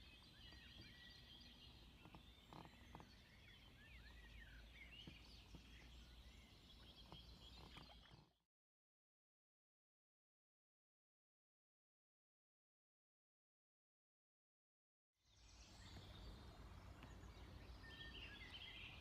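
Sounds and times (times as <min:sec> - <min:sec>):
faint birdsong: 0:00.0 - 0:08.4, 0:15.2 - 0:19.0.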